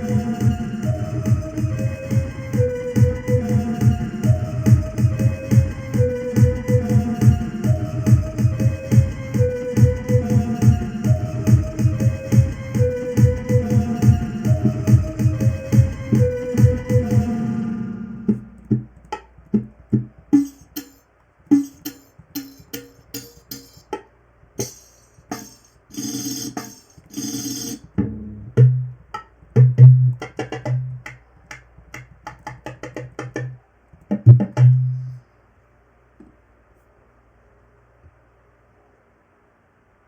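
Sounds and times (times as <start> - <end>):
electronic drum pattern: 0.0 - 31.1.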